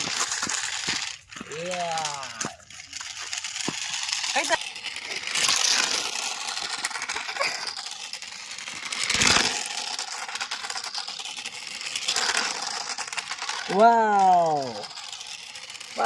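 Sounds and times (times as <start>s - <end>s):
plastic wheels rattling: 0.0s - 16.0s
small electric motor whirring: 0.0s - 16.0s.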